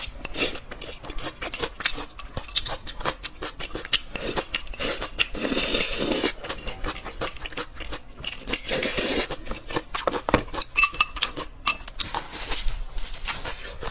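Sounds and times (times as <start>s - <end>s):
utensils clinking against dish: 0.0s - 12.6s
ringing clink: 10.6s - 11.8s.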